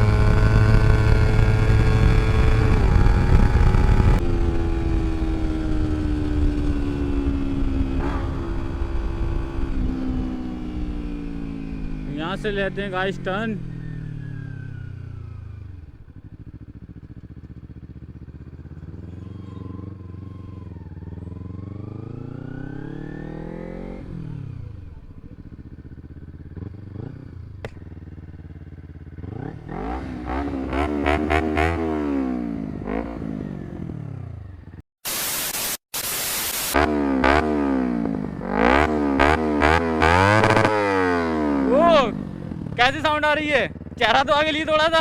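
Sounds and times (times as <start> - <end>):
motorcycle engine revving: 0.0 - 35.3, 36.3 - 45.0
loud hiss: 35.0 - 36.8.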